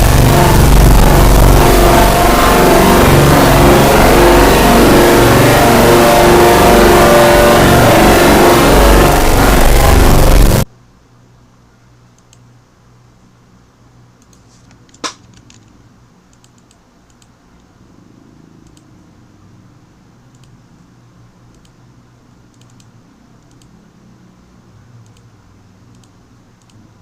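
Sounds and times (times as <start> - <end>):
low steady hum: 0.0 - 27.0
keyboard and mouse clicks: 14.2 - 17.7, 18.6 - 18.9, 20.3 - 20.6, 21.5 - 21.8, 22.5 - 23.8, 25.0 - 25.3, 25.9 - 26.8.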